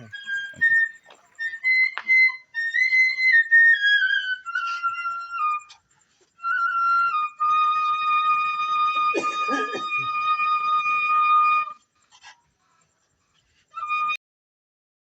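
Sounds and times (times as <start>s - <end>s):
flute-like melody: 0.0s - 5.8s, 6.4s - 11.9s, 13.7s - 14.2s
short rough cough-like sound: 9.2s - 10.1s.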